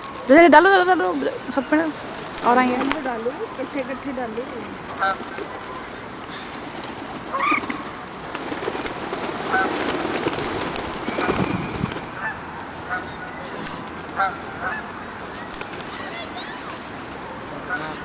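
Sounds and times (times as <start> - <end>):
birds honking: 1.6 - 8.2, 8.8 - 10.4, 11.0 - 16.7, 17.6 - 18.0.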